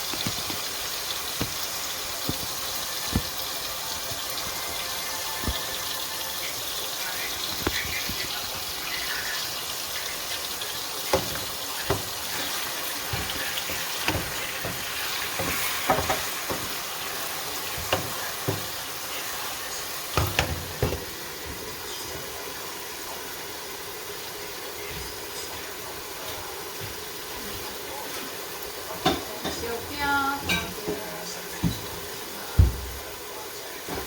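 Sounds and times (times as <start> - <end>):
food sizzling in pot: 0.0 - 34.0
spoon knocking against pot: 11.1 - 16.8, 17.7 - 18.8, 20.2 - 21.1.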